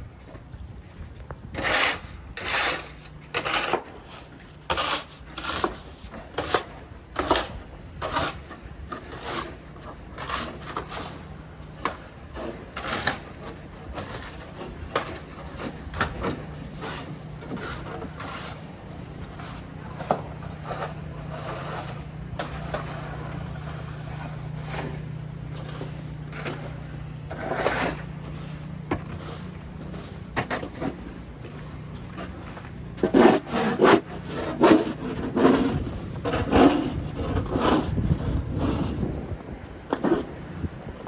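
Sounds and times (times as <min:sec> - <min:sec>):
low steady hum: 0:00.0 - 0:41.0
footsteps crunching in snow: 0:12.8 - 0:41.0.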